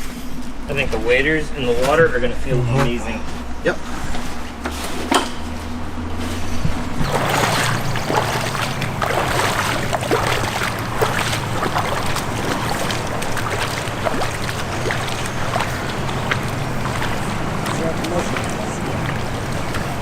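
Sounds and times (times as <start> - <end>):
steady low hum: 0.0 - 20.0
river water rushing and splashing: 6.9 - 20.0.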